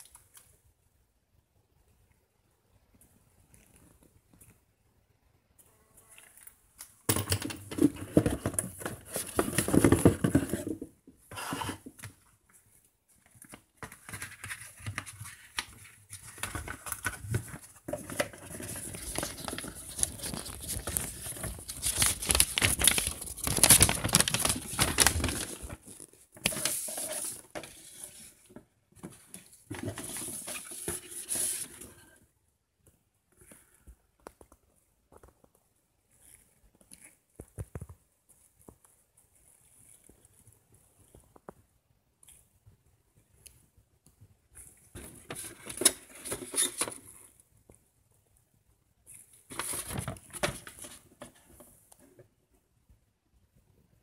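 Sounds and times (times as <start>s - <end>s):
packaging crinkling and tearing: 14.2s - 27.4s.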